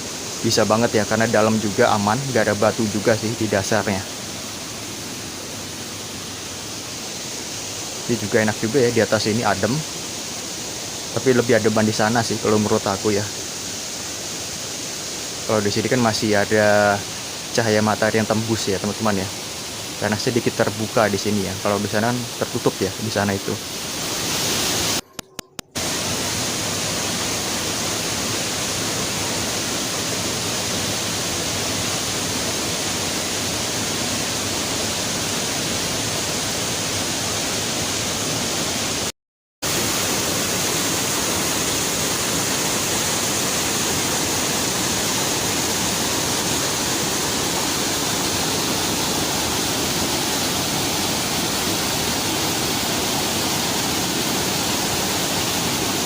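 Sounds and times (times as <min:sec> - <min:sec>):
waterfall pouring into pool: 0:39.7 - 0:56.0.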